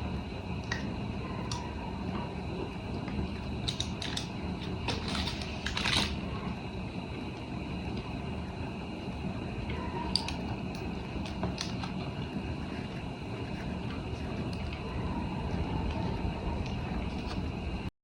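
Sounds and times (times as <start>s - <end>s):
steady low hum: 0.0s - 17.9s.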